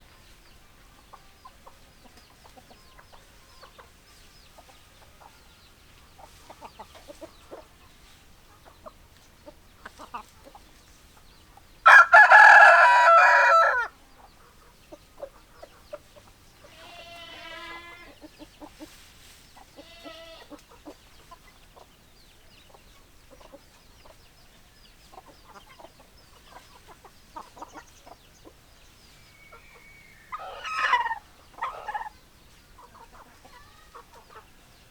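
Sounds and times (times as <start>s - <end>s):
hen clucks: 0.8s - 34.9s
rooster crow: 11.8s - 13.9s, 30.3s - 32.1s
wavering drawn-out chicken calls: 11.8s - 22.0s, 25.2s - 34.7s.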